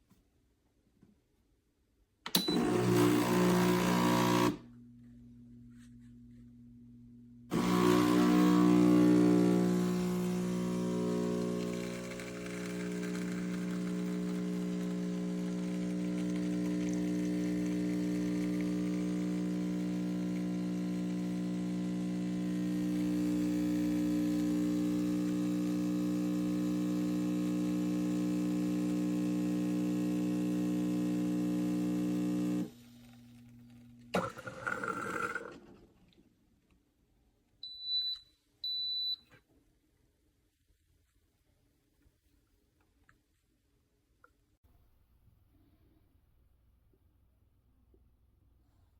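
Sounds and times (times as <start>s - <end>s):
espresso machine pump humming: 2.5s - 4.6s, 7.5s - 35.6s.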